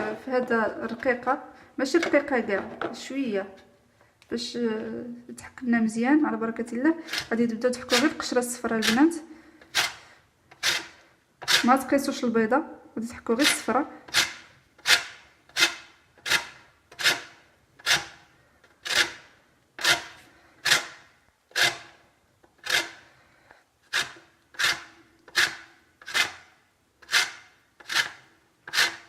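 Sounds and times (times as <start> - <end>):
lemon rasping on metal grater: 7.0 - 11.9, 13.3 - 18.2, 23.9 - 29.0.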